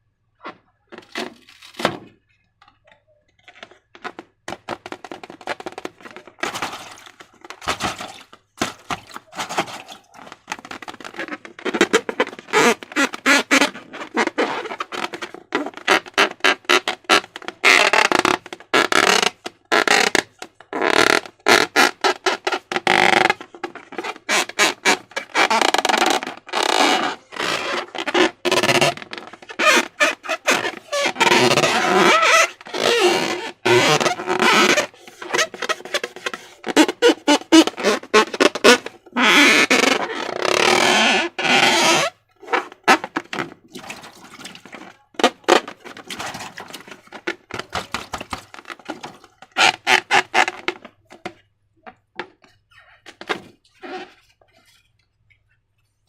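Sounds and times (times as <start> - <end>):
slime squelching by hand: 42.4 - 50.8.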